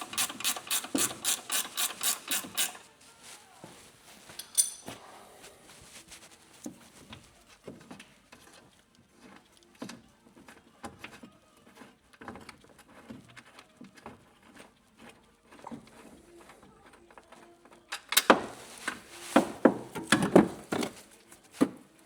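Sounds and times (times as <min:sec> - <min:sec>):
hand tools tapping and clicking: 0:00.0 - 0:02.9, 0:04.2 - 0:05.0, 0:11.8 - 0:21.9.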